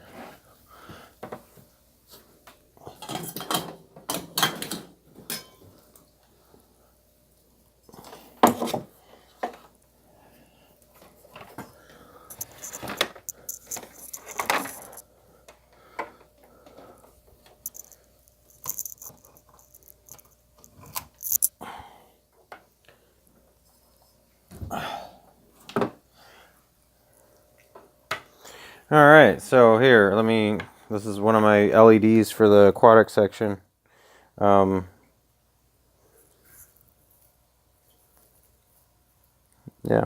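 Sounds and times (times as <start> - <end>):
vivarium parts clattering and knocking: 2.9 - 5.7, 12.3 - 15.0, 17.5 - 21.5.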